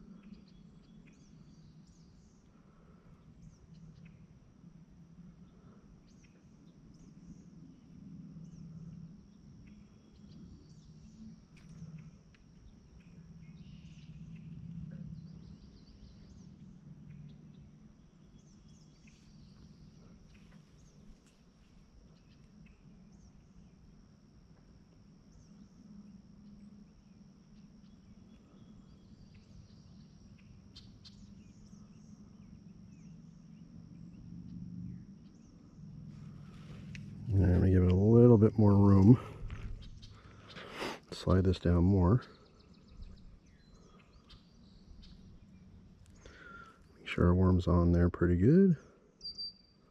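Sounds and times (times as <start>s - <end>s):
faint low rumble: 0.0s - 49.1s
insects droning: 0.0s - 49.9s
bird chirps: 36.5s - 47.9s, 49.2s - 49.9s.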